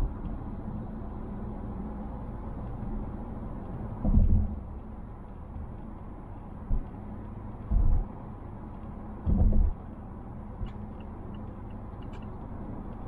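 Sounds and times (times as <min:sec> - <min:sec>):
car cabin road and tyre noise: 0:00.0 - 0:13.0
faint light ticks: 0:03.6 - 0:10.0, 0:10.6 - 0:13.0
dull low thumps: 0:07.7 - 0:08.1, 0:09.2 - 0:09.8.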